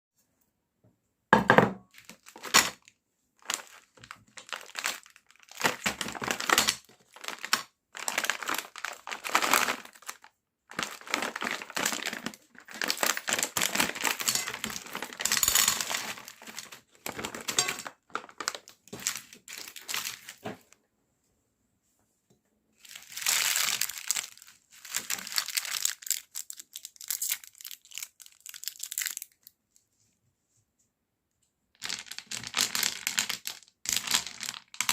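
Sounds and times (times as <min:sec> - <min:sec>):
meat grinder crunching candy: 0:03.5 - 0:20.4, 0:22.9 - 0:29.4, 0:31.8 - 0:34.9.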